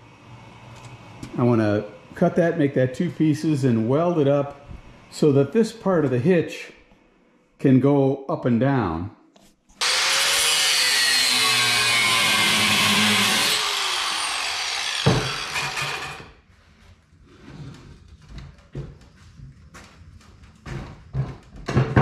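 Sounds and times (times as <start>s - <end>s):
power tool cutting steel: 9.8s - 16.4s.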